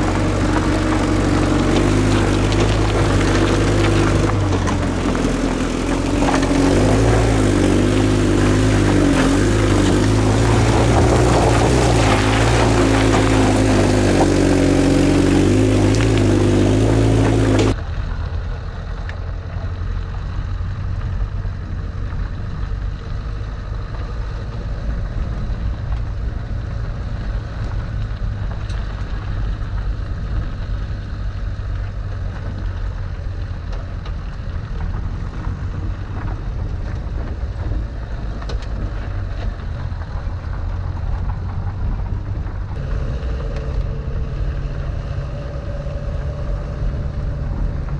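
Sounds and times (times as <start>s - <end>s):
car engine running: 0.0s - 17.8s, 28.6s - 47.9s.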